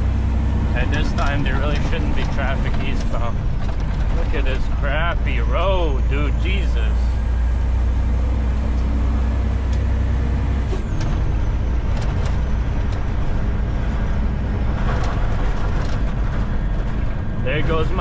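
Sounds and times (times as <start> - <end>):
truck diesel engine running: 0.0 - 18.0
knocks and rattles from bumps: 0.8 - 5.8, 10.8 - 18.0.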